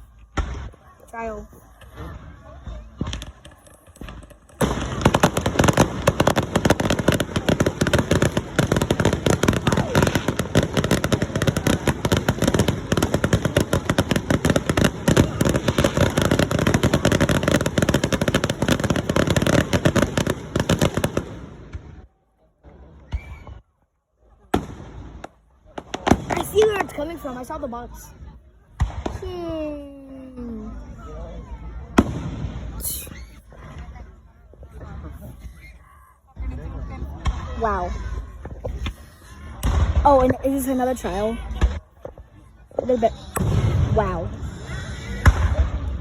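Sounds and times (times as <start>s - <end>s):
fireworks crackling: 0.0s - 22.0s, 24.5s - 28.1s, 32.0s - 33.8s.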